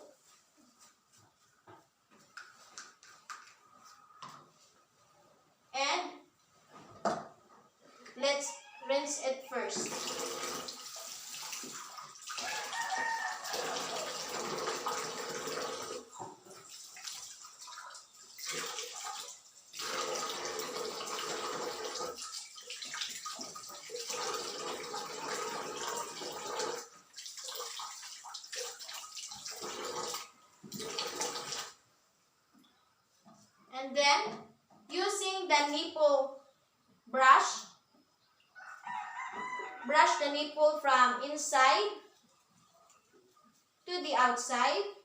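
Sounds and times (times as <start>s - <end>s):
tap water running and splashing: 9.7s - 31.8s.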